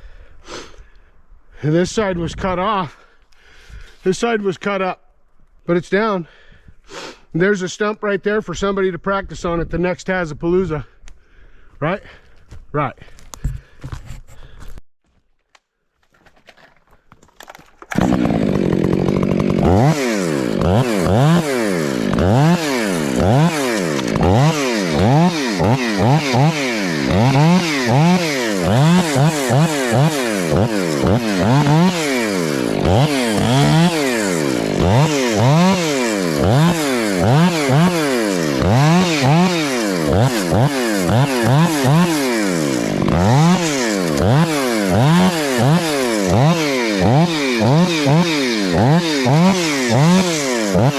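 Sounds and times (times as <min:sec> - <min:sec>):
chainsaw revving: 0:17.9 - 0:50.9.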